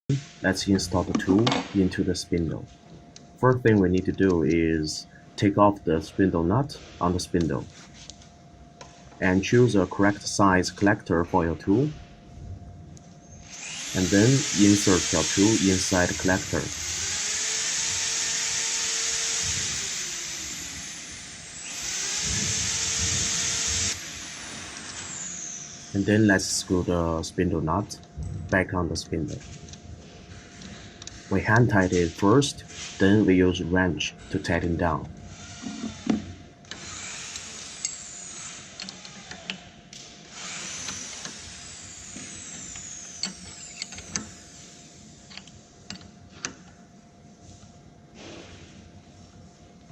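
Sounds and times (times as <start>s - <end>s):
loud steady hiss: 0.1s - 2.6s, 13.5s - 29.4s.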